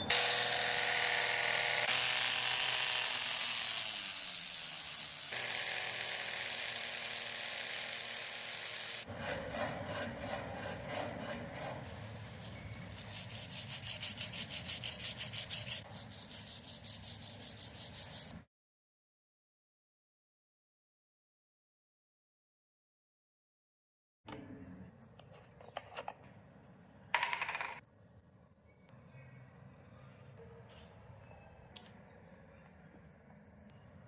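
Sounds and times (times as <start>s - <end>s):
small power tool running: 0.1s - 9.1s
rapid hand rubbing strokes: 13.0s - 18.4s.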